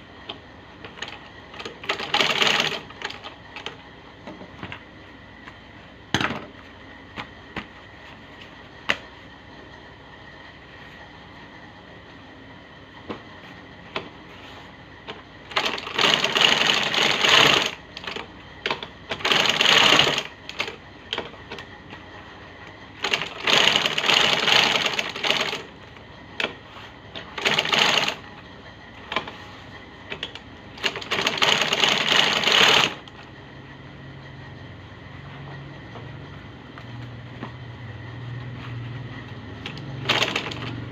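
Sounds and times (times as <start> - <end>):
sewing machine stitching: 0.9 - 3.8, 15.5 - 21.3, 23.0 - 25.7, 27.2 - 28.2, 30.1 - 33.1, 39.6 - 40.9
sewing machine clicks: 39.6 - 40.8.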